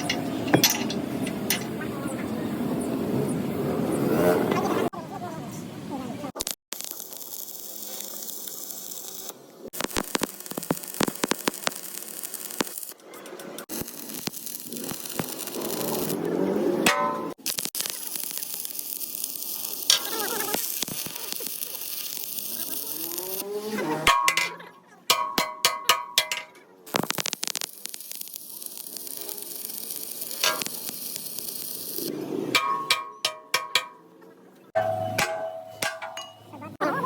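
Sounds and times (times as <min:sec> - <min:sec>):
metallic clinks and strikes: 0:00.0 - 0:01.8, 0:32.6 - 0:34.0, 0:34.8 - 0:36.8
arc welding crackling sizzle: 0:06.3 - 0:16.3, 0:17.4 - 0:23.8, 0:26.9 - 0:32.1.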